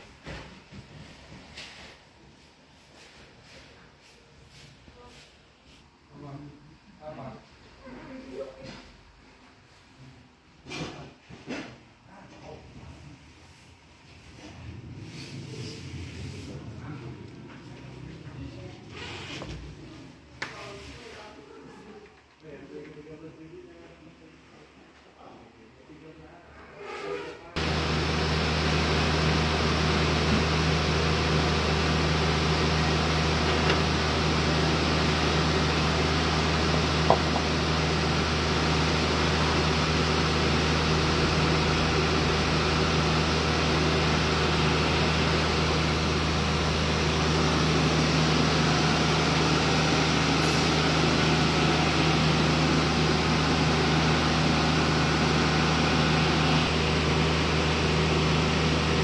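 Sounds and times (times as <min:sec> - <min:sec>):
generator engine humming: 0:27.6 - 0:59.0.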